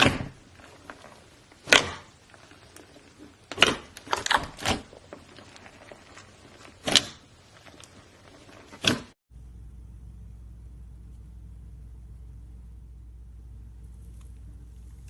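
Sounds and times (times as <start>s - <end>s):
slime popping and crackling: 0.0s - 9.2s.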